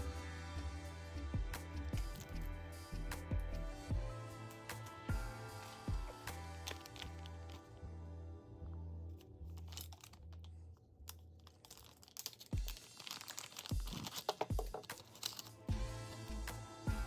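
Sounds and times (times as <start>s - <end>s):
background music with steady beat: 0.0s - 8.0s, 12.6s - 17.0s
packaging crinkling and tearing: 11.2s - 15.6s.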